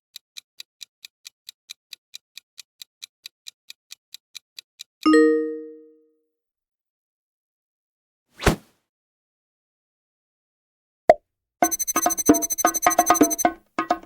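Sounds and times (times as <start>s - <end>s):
clock ticks: 0.1s - 5.1s.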